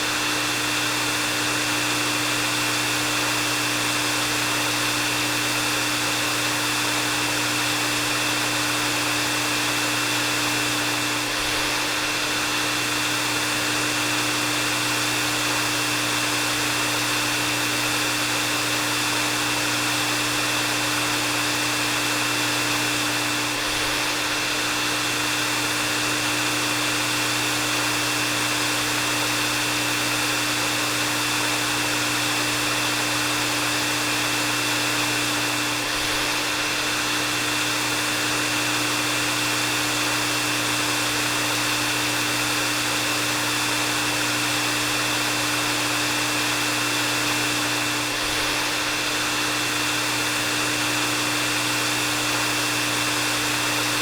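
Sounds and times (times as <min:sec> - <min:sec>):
hair dryer running: 0:00.0 - 0:54.0.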